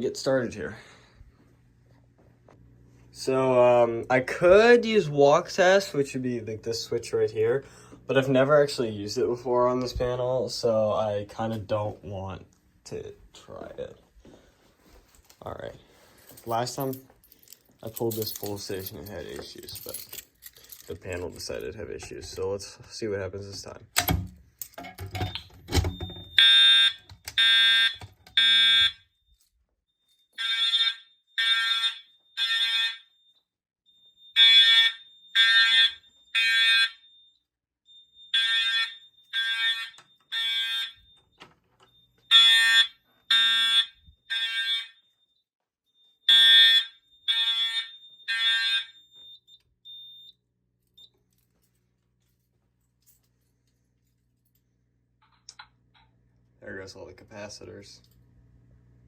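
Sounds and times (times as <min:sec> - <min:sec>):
fire alarm horns blasting: 0:25.3 - 0:51.2.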